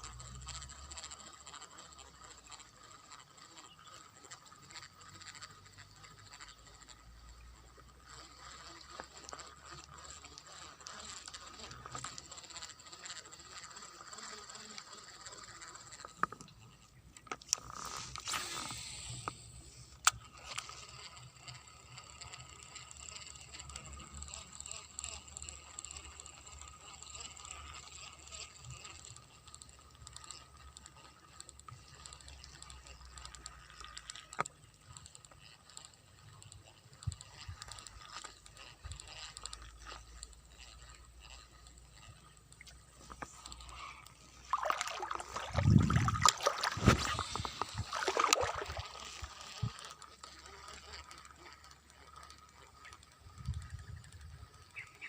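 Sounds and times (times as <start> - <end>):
fishing reel ratcheting whirr: 0.0 - 55.0
reel clicks: 0.0 - 55.0
high-pitched hum: 39.6 - 51.5.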